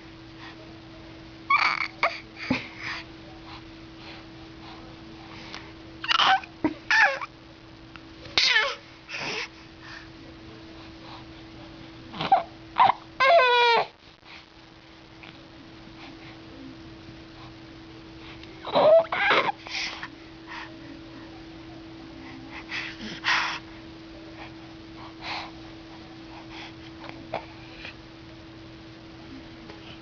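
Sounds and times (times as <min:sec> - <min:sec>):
baby whimpering and crying: 0:01.5 - 0:02.2, 0:06.0 - 0:07.3, 0:08.4 - 0:09.4, 0:12.2 - 0:14.0, 0:18.6 - 0:19.6
baby squealing: 0:18.7 - 0:19.5.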